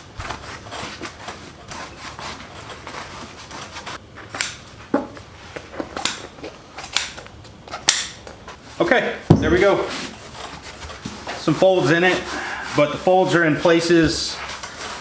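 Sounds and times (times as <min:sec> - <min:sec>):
rubbing and rasping vinyl: 0:00.0 - 0:04.0, 0:09.5 - 0:15.0
sharp scrapes: 0:09.6 - 0:15.0.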